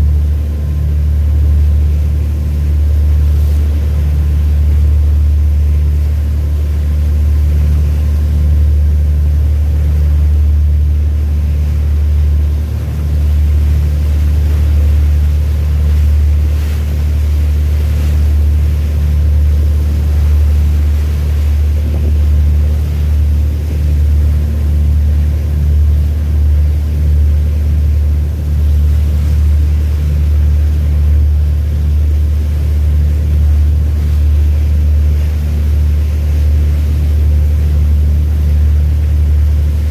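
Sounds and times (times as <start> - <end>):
ship engine low drone: 0.0 - 39.9.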